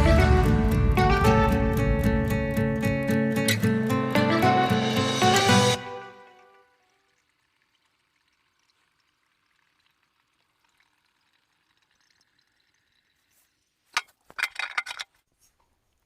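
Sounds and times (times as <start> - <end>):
liquid pouring: 6.0 - 14.0.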